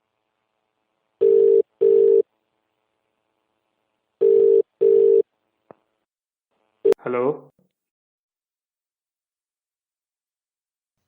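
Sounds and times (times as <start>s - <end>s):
telephone ringback tone: 1.2s - 2.2s, 4.2s - 5.2s.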